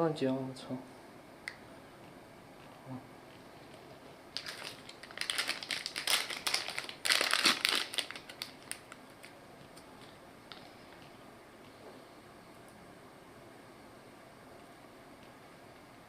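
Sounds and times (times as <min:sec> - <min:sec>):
packaging crinkling: 0:03.7 - 0:11.1.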